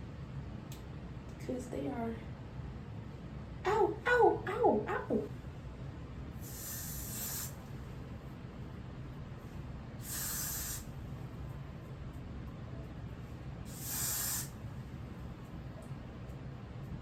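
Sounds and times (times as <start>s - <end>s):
steady low hum: 0.0s - 17.0s
aerosol spray bursts: 6.4s - 7.6s, 10.0s - 10.9s, 13.7s - 14.5s.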